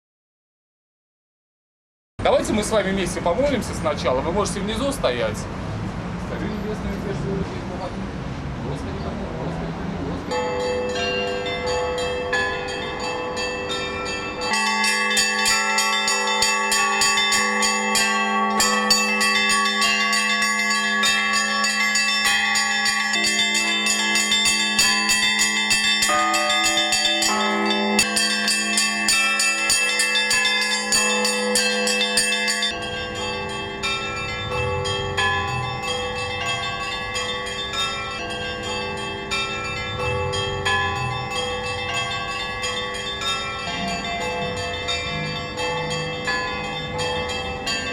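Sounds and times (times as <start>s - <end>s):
small church bells ringing: 10.2s - 47.9s
large bell humming: 10.3s - 47.9s.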